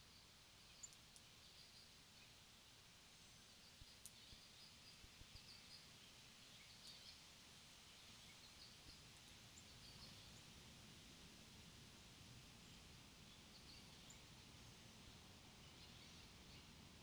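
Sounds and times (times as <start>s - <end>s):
outdoor background hiss: 0.0s - 17.0s
soft ticks: 0.8s - 1.3s, 3.8s - 4.4s.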